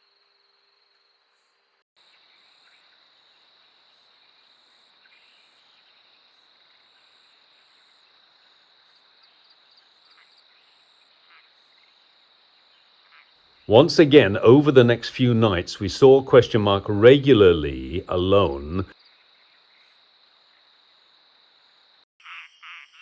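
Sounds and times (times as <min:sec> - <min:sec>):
night insects chirring: 0:02.1 - 0:13.7.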